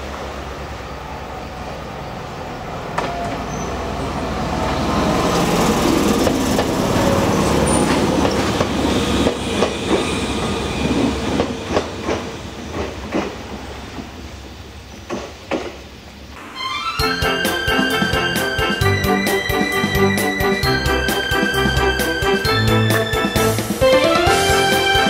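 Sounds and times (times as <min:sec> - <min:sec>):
electric train passing: 0:00.0 - 0:25.0
wheels clacking over rail joints: 0:02.8 - 0:14.2, 0:14.8 - 0:15.9.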